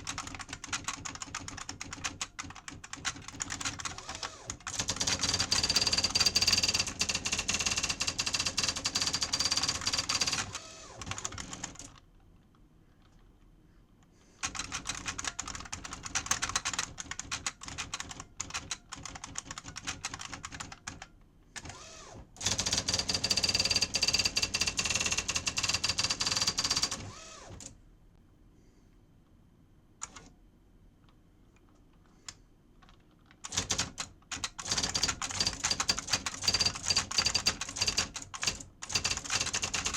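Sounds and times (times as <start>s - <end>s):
electronic typewriter typing: 0.0s - 12.0s, 14.4s - 21.8s, 22.4s - 27.1s, 32.9s - 39.9s.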